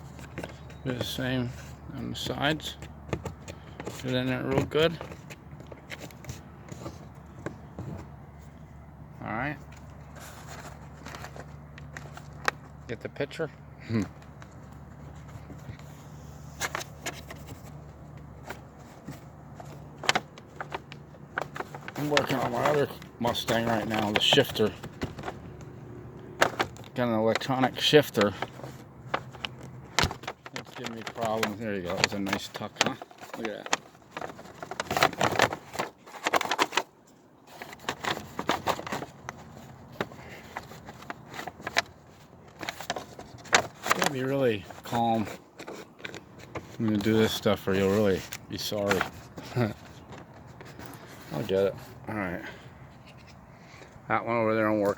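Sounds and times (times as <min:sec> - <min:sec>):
handling clicks and taps: 0:00.0 - 0:08.7, 0:16.6 - 0:36.8.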